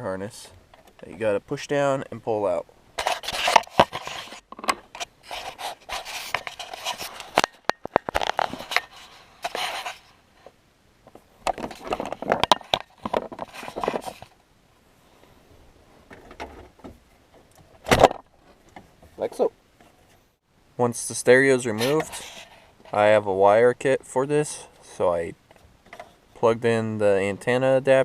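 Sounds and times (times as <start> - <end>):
plastic scraping and rustling: 3.0 - 10.5, 11.1 - 14.4.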